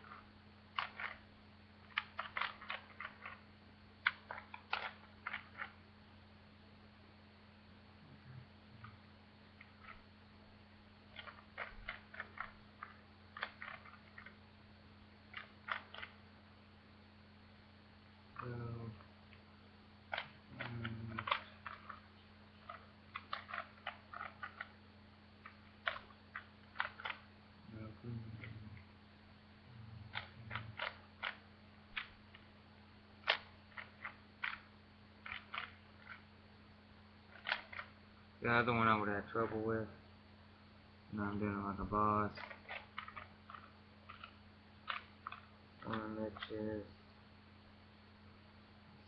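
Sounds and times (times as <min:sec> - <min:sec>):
speed cube clicking turns: 0:00.0 - 0:01.2, 0:01.8 - 0:03.4, 0:04.0 - 0:05.8, 0:11.1 - 0:14.4, 0:15.4 - 0:16.2, 0:20.1 - 0:22.0, 0:22.6 - 0:24.8, 0:25.4 - 0:27.3, 0:30.1 - 0:32.4, 0:33.2 - 0:36.2, 0:37.3 - 0:37.9, 0:42.4 - 0:46.5
low electrical hum: 0:00.0 - 0:49.0.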